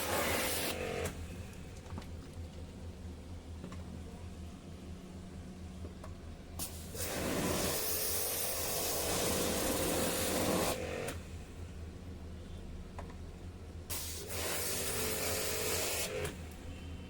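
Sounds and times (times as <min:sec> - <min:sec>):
low steady hum: 0:00.8 - 0:06.8.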